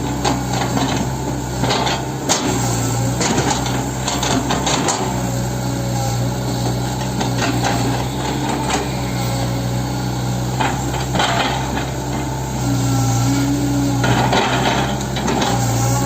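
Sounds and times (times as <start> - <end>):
excavator diesel engine running: 0.0 - 16.0
metal clanks and knocks: 10.5 - 12.3, 14.0 - 15.7.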